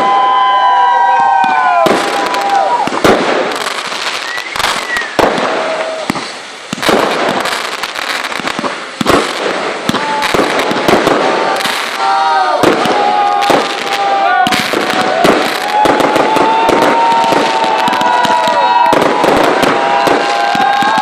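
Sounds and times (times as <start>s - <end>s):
fireworks crackling: 0.0s - 21.0s
fireworks sharp bangs: 1.3s - 21.0s
whistle-like tones: 4.1s - 5.2s.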